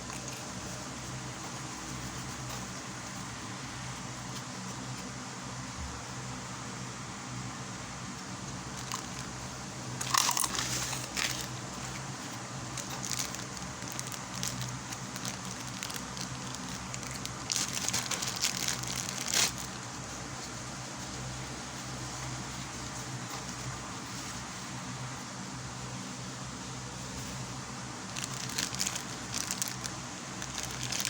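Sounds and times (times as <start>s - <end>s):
steady low hum: 0.0s - 31.0s
packaging crinkling: 8.7s - 20.0s, 28.1s - 31.0s.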